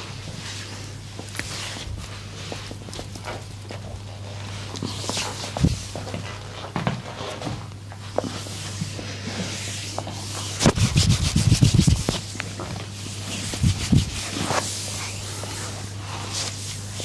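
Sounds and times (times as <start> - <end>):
steady low hum: 0.0 - 17.0
hands rubbing on skin: 9.9 - 12.3, 13.1 - 16.9.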